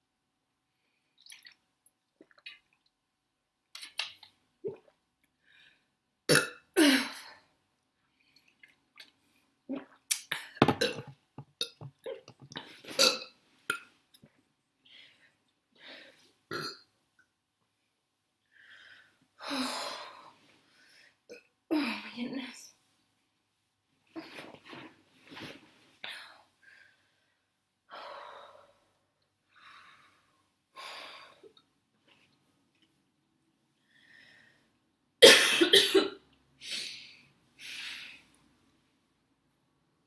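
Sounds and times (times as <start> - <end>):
woman burping: 6.3 - 7.2, 10.6 - 12.2, 12.9 - 13.8, 16.5 - 16.8.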